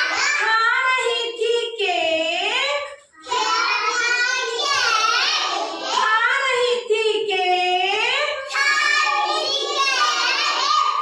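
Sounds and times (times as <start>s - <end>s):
child singing: 3.2s - 6.2s, 8.5s - 11.0s.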